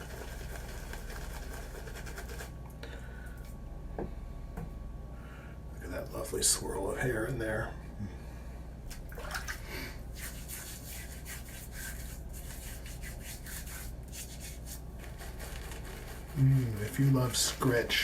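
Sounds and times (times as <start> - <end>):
shaving brush scrubbing lather: 0.0 - 2.5, 10.1 - 18.0.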